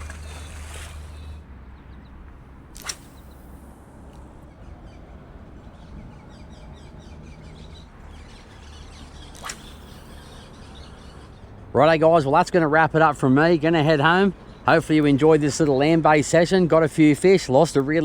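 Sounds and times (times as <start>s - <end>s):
bird chirping: 0.0s - 2.4s, 3.1s - 12.4s, 13.1s - 16.0s
sharp click: 2.3s - 4.3s, 9.3s - 10.2s.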